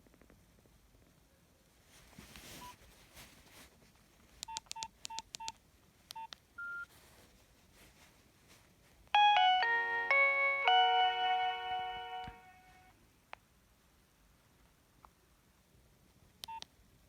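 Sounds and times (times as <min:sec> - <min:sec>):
handling rustle: 0:01.8 - 0:04.4, 0:06.9 - 0:09.0
higher longer phone tone: 0:09.2 - 0:12.9.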